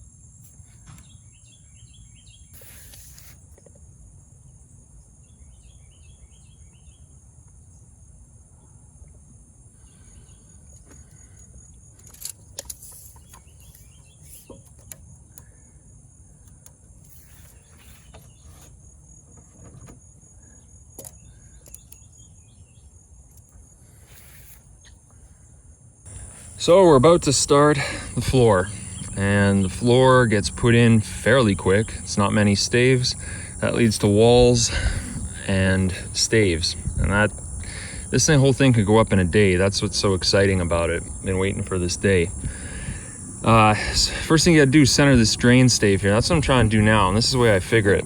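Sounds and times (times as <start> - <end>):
crickets chirring: 0.0 - 48.0
bird chirps: 13.0 - 14.7, 26.1 - 36.2
low background rumble: 26.1 - 48.0.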